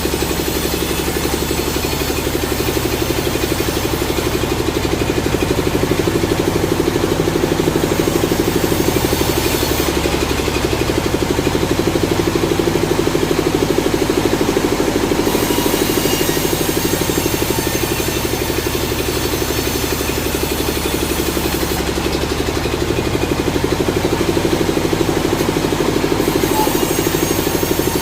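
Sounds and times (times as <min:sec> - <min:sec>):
sawmill engine running: 0:00.0 - 0:28.0.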